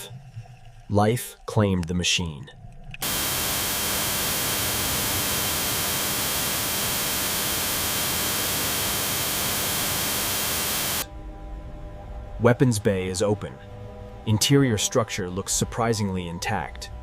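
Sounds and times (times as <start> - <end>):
static white noise hiss: 3.0 - 11.0.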